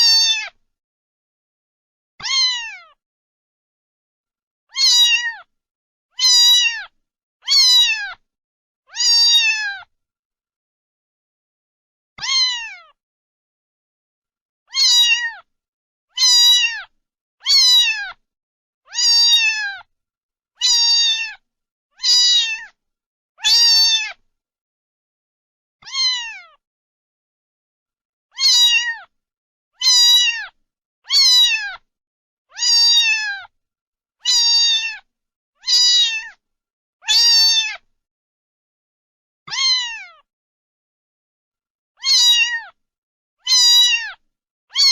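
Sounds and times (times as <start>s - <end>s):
cat meowing: 0.0s - 0.6s, 2.2s - 3.0s, 4.7s - 5.5s, 6.2s - 8.2s, 8.9s - 9.9s, 12.2s - 13.0s, 14.7s - 15.5s, 16.1s - 18.2s, 18.9s - 19.9s, 20.6s - 21.4s, 22.0s - 22.8s, 23.4s - 24.2s, 25.8s - 26.6s, 28.3s - 29.1s, 29.8s - 31.8s, 32.5s - 33.5s, 34.2s - 36.4s, 37.0s - 37.8s, 39.5s - 40.3s, 42.0s - 42.8s, 43.4s - 44.9s.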